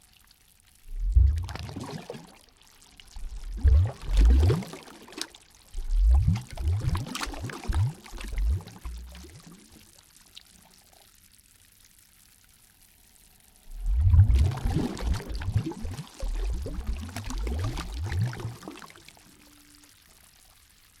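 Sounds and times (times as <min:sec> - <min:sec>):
water sloshing and glugging: 0:00.8 - 0:10.6, 0:13.7 - 0:19.9.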